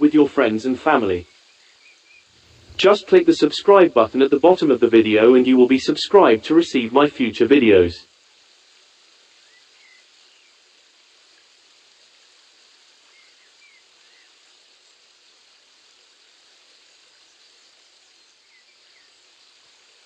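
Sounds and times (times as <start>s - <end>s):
mountain stream rushing: 2.4s - 8.0s.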